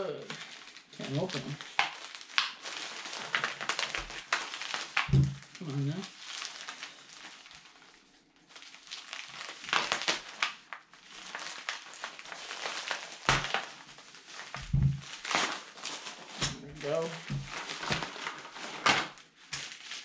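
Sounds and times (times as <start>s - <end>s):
packaging crinkling: 0.0s - 20.0s
low bumps: 14.6s - 15.0s.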